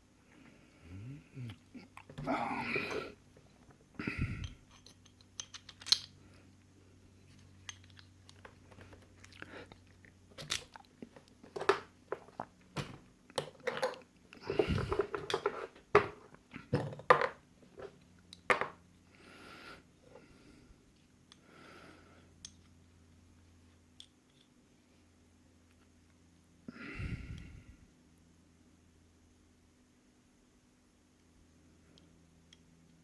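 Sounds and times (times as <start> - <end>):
metal lock parts clicking: 4.4 - 6.2.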